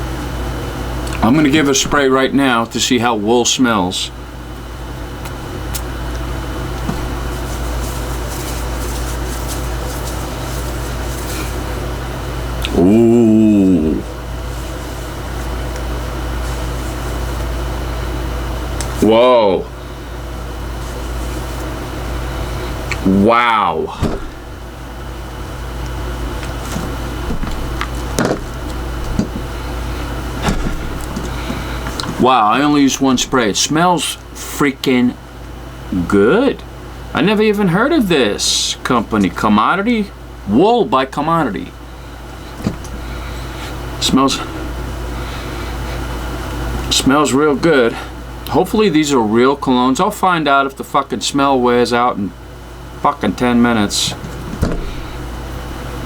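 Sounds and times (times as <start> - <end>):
low mechanical hum: 0.0 - 56.0
short knocks: 23.9 - 24.6, 54.2 - 55.8.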